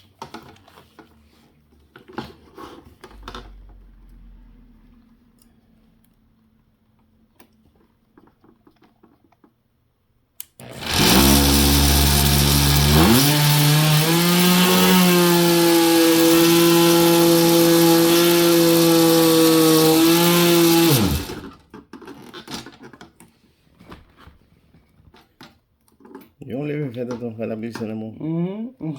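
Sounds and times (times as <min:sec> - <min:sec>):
oscillating multi-tool buzzing: 0:10.6 - 0:21.5.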